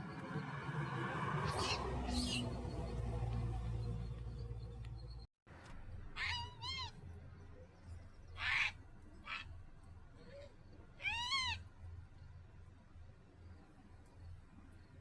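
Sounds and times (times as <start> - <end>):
animal high-pitched calls: 1.4 - 2.6, 6.2 - 7.0, 8.4 - 9.5, 11.0 - 11.6.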